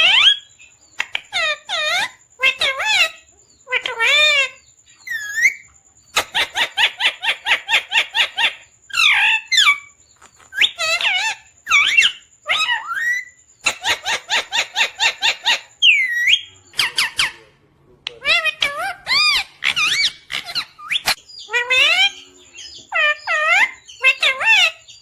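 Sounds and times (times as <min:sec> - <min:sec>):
parrot chirping: 0:00.0 - 0:25.0.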